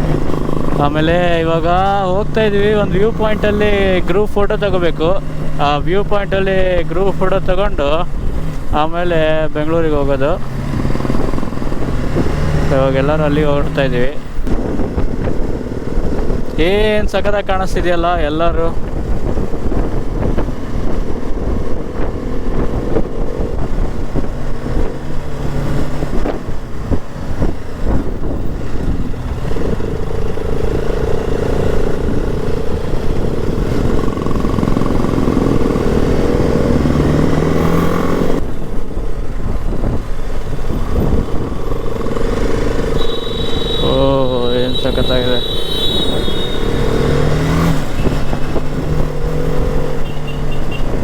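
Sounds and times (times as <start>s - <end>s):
motorcycle engine running: 0.0s - 16.7s, 18.7s - 51.0s.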